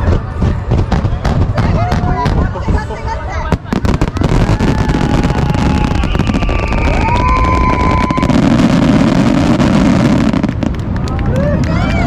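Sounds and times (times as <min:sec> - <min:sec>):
fireworks crackling: 0:00.0 - 0:12.0
high rising whistle: 0:04.8 - 0:08.6.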